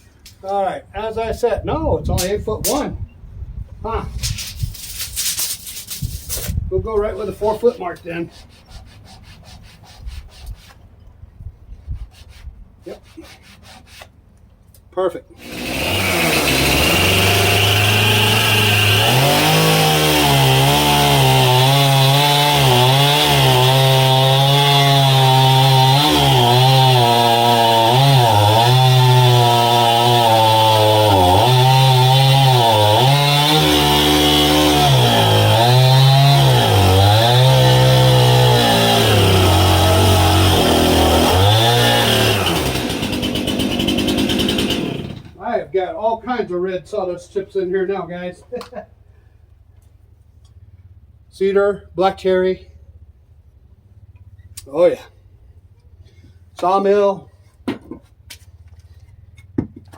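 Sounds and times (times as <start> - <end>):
chainsaw cutting log: 15.4 - 45.4.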